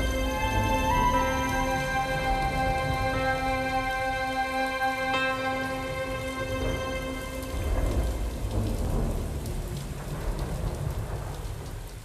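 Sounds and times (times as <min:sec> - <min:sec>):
held musical notes: 0:00.0 - 0:08.5
rolling thunder: 0:00.0 - 0:12.0
steady rain: 0:00.0 - 0:12.0.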